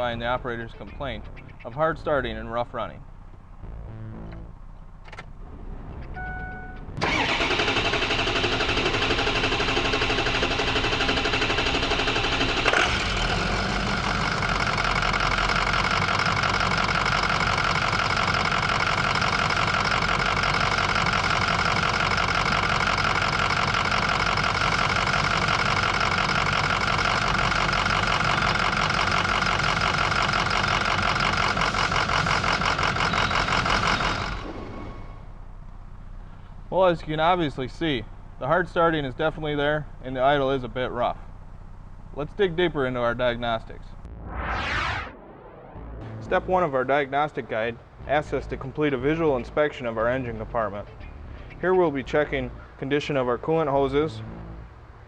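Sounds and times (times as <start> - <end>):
starter motor cranking: 7.0 - 35.3
diesel engine idling roughly: 7.0 - 43.2, 47.8 - 54.6.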